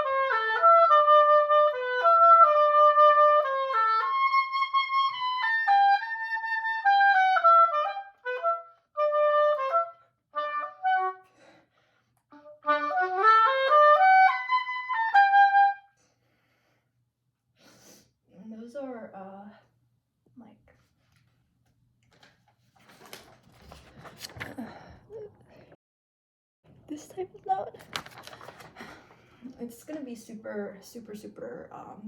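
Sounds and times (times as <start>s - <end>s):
solo oboe playing: 0.0s - 11.4s, 12.3s - 16.0s.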